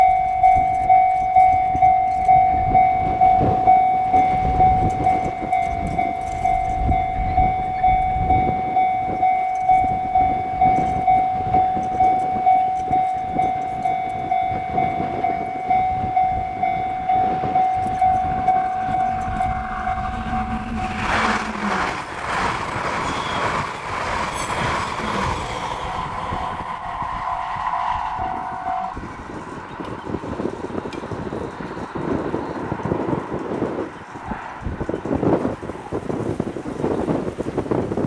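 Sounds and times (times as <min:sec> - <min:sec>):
level-crossing alarm ringing: 0:00.0 - 0:29.4
train rumbling past: 0:00.0 - 0:38.0
train wheels clattering: 0:00.0 - 0:38.0.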